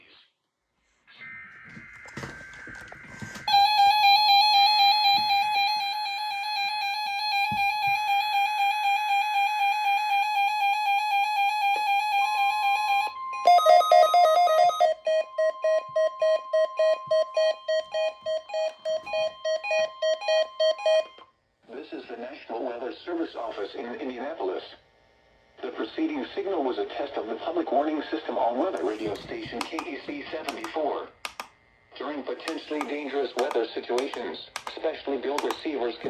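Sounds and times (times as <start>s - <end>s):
pulsing electronic alarm: 1.2s - 21.1s
steady warning alarm tone: 1.4s - 21.1s.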